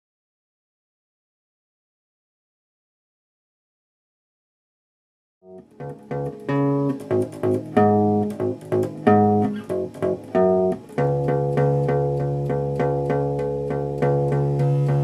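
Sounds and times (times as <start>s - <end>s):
guitar music: 5.5s - 15.0s.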